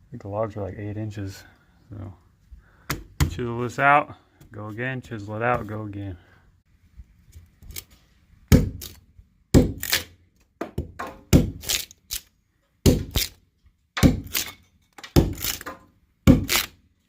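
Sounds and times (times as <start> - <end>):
hammer striking wood chisel: 14.0 - 16.7.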